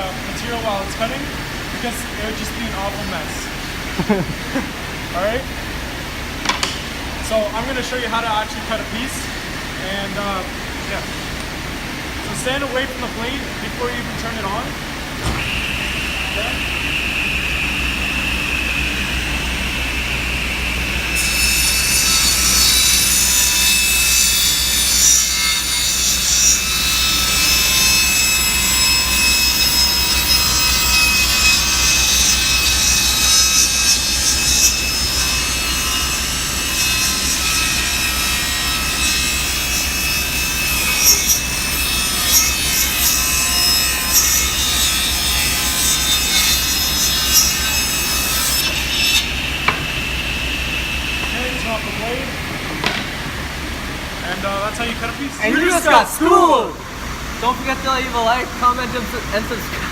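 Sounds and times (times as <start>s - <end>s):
table saw cutting wood: 15.2s - 56.4s.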